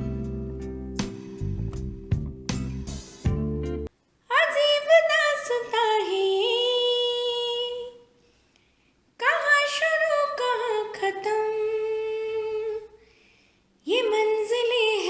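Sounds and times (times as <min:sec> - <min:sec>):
woman singing unaccompanied: 0:04.2 - 0:08.1, 0:09.2 - 0:13.0, 0:13.8 - 0:15.0.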